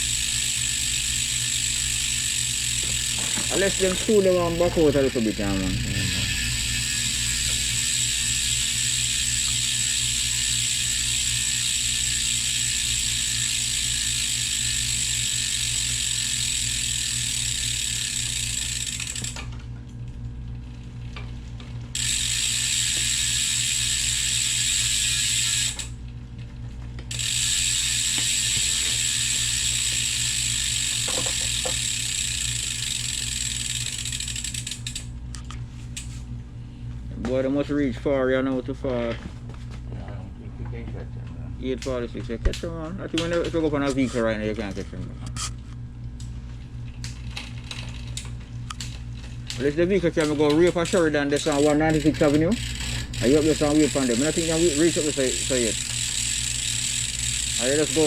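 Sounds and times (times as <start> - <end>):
freehub pawls clicking: 0.0 - 19.7, 21.9 - 26.0, 27.0 - 36.1, 46.8 - 58.0.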